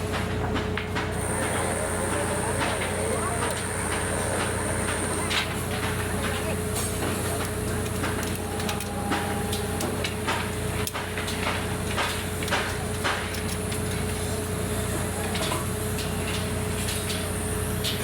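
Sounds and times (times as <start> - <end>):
machinery whine: 1.1 - 12.0
heavy machinery droning: 1.1 - 15.8.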